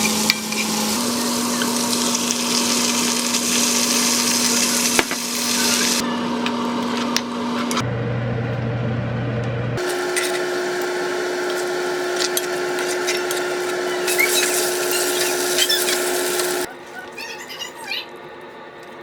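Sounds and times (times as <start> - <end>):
machine humming and hissing: 0.0 - 16.7.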